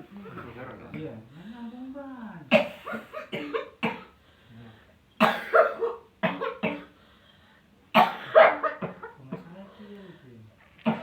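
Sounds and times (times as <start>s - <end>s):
woman coughing: 2.5s - 4.2s, 5.2s - 7.0s, 8.0s - 9.5s.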